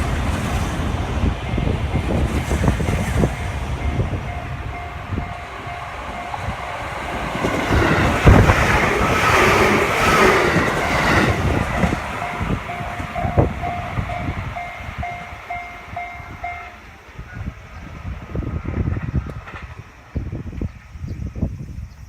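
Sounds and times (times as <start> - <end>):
train wheels on rails: 0.0 - 22.0
wind buffeting microphone: 0.0 - 22.0
level crossing bell ringing: 11.8 - 16.8.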